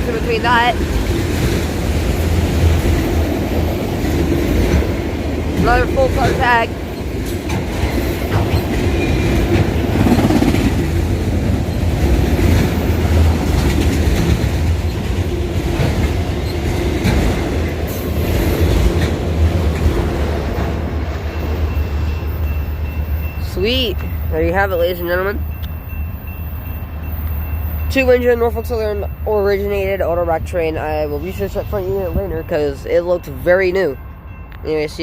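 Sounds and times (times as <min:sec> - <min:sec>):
freight train wheels rumbling: 0:00.0 - 0:35.0
wheels clicking over rail joints: 0:00.7 - 0:21.4.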